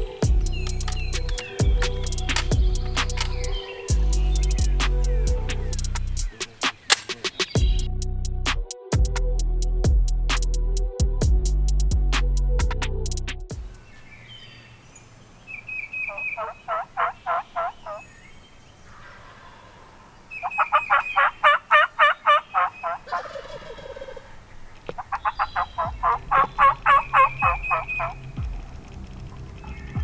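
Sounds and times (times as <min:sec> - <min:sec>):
turkey yelping: 0:00.0 - 0:07.9, 0:15.5 - 0:28.7.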